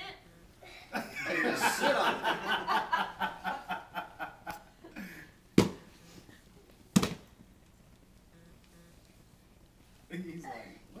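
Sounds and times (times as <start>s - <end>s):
people laughing: 0.9s - 5.1s.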